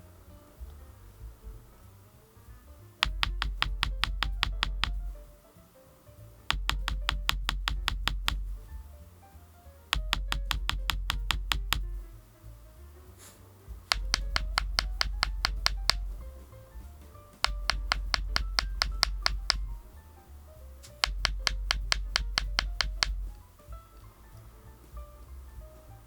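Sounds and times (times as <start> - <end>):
background music with bass line: 0.0 - 26.0
rapid sharp clicks: 3.0 - 5.2, 6.5 - 8.7, 10.0 - 12.1, 13.9 - 16.5, 17.4 - 19.9, 20.8 - 23.4.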